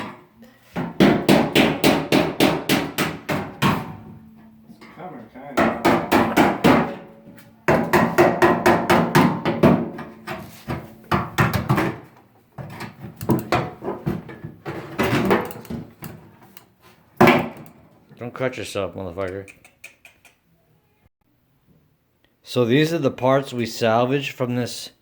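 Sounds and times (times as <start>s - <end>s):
tools knocking and scraping metal: 0.8s - 5.0s, 5.6s - 16.6s.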